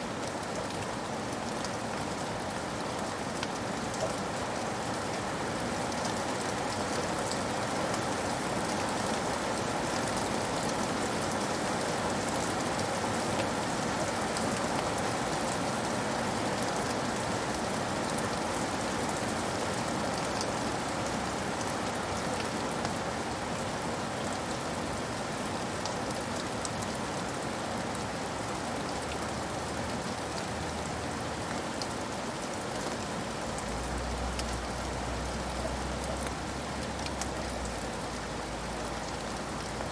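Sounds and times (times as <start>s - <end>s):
rain on a hard surface: 0.0s - 39.9s.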